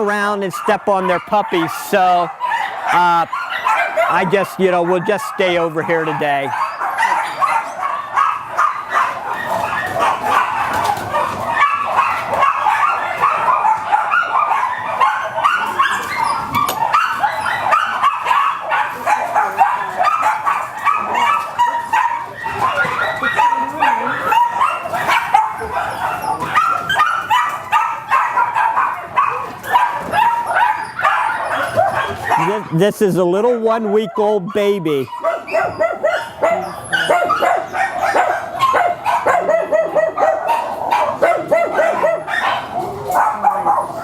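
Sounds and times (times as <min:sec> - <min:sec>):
many dogs barking and yipping: 0:00.0 - 0:44.0.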